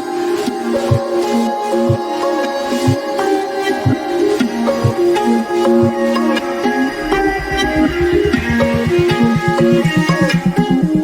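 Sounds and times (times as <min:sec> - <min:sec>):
sustained melodic notes: 0:06.1 - 0:11.0
low drum beat: 0:07.2 - 0:11.0.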